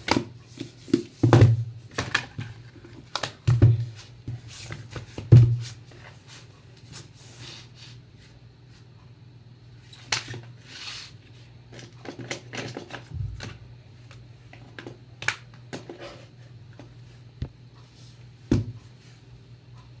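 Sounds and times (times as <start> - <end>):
faint low hum: 13.0 - 20.0.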